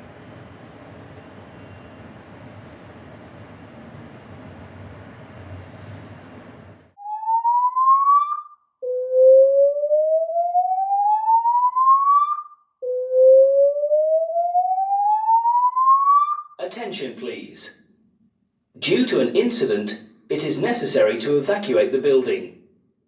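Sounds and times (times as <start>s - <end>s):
fire alarm slow-whoop tone: 7.0s - 16.6s.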